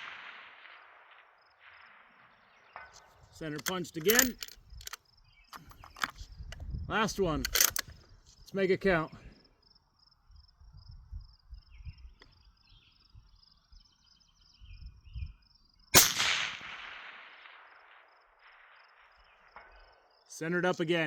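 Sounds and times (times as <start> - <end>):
rifle shot: 0.0 - 5.0, 7.4 - 7.8, 16.0 - 20.0.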